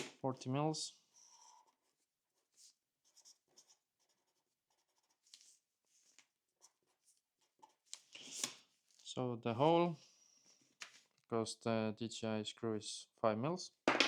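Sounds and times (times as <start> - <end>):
pencil writing on paper: 3.0 - 5.3, 6.6 - 8.0.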